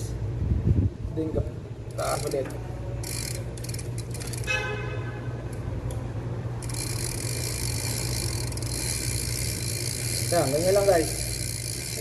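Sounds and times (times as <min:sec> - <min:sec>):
bicycle drivetrain ticking: 0:01.9 - 0:04.6, 0:06.6 - 0:12.0.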